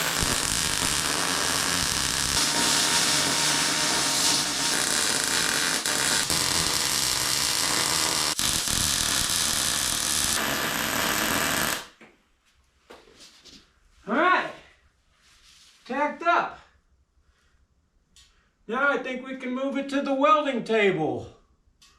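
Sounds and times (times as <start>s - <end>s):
welding arc crackling and buzzing: 0.0s - 12.0s.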